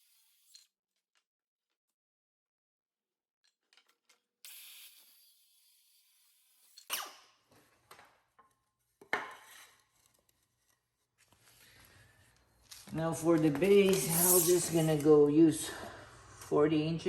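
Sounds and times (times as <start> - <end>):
short hiss: 14.0 - 15.0.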